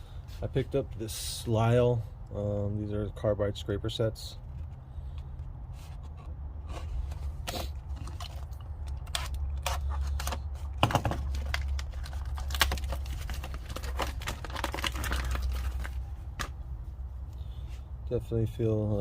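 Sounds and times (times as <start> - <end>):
steady low hum: 0.0 - 14.5
tools and packaging handled: 5.8 - 16.6.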